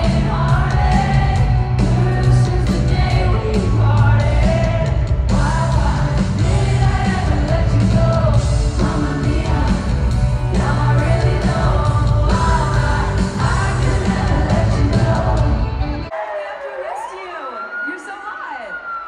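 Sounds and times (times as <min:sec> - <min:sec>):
pop music with singing: 0:00.0 - 0:19.0.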